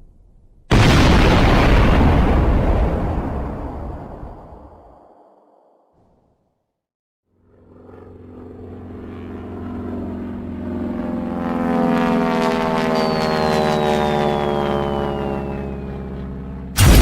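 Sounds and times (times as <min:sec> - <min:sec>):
engine drone: 0:07.3 - 0:17.0.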